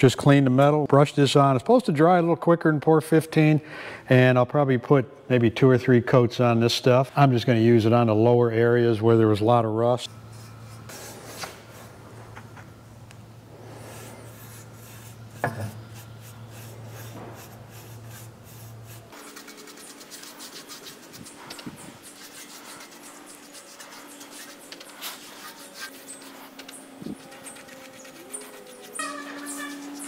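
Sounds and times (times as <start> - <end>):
paintbrush scratching on steel: 13.6 - 30.0.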